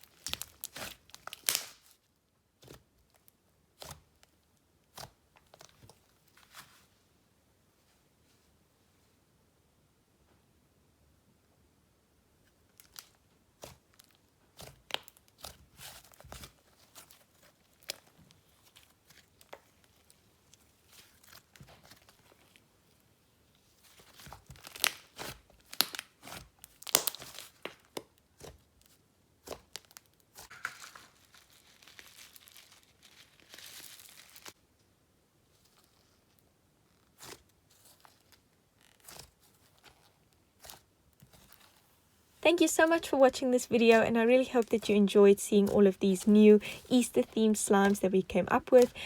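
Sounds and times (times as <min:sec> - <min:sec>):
slime crackling and popping: 0:00.0 - 0:01.9, 0:12.8 - 0:22.6, 0:23.8 - 0:34.6, 0:37.1 - 0:41.7, 0:44.6 - 0:44.9, 0:46.6 - 0:49.0.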